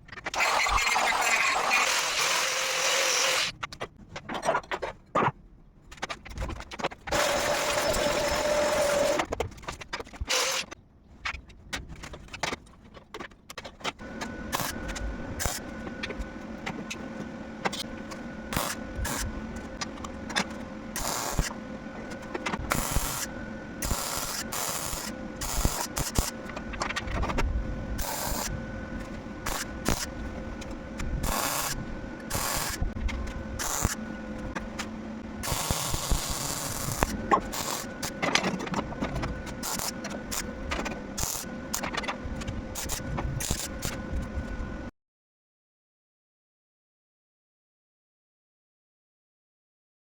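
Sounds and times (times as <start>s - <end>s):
machine hum with crackle: 0.0s - 44.9s
tool working metal: 0.3s - 3.6s, 7.1s - 9.3s, 28.0s - 28.6s, 31.2s - 42.0s.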